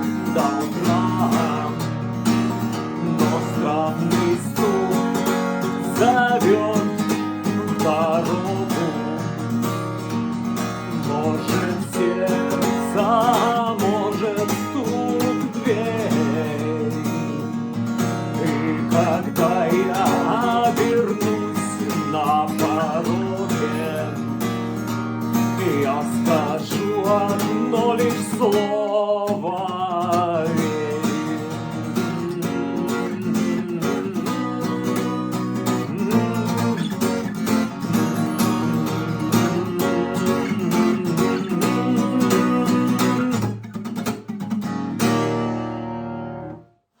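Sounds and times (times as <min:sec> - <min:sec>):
acoustic guitar strumming: 0:00.0 - 0:46.9.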